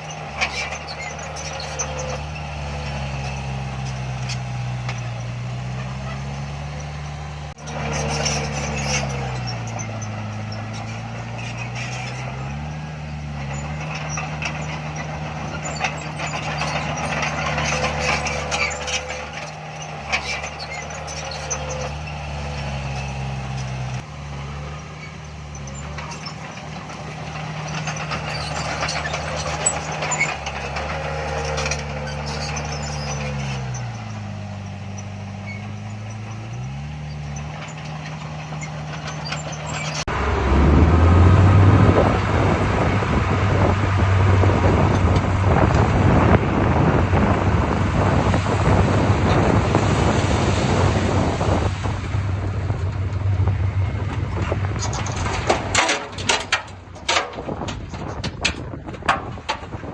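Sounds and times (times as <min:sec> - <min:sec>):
heavy diesel engine revving: 0:00.0 - 0:58.9
metallic clanks and knocks: 0:52.7 - 0:59.9.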